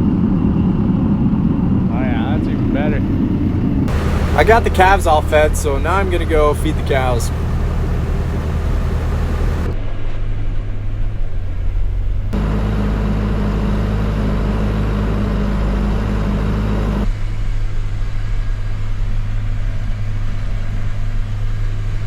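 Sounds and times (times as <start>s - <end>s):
tractor engine droning: 0.9s - 9.8s, 12.4s - 17.1s.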